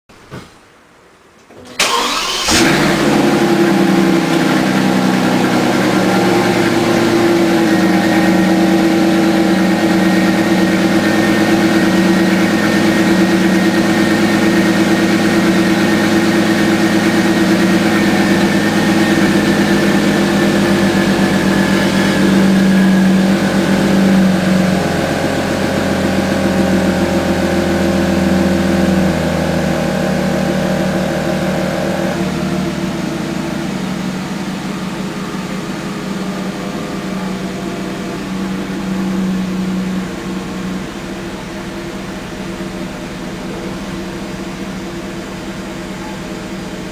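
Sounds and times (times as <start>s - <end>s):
car engine starting and idling: 1.4s - 46.9s.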